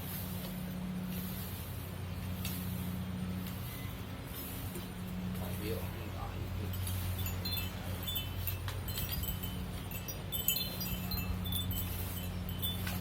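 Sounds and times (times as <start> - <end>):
high ringing chime notes: 6.8 - 13.0.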